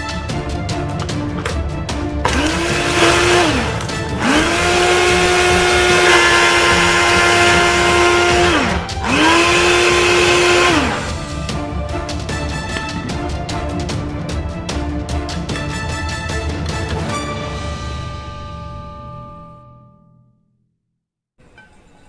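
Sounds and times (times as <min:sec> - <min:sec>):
electric blender whining: 0:02.3 - 0:11.3.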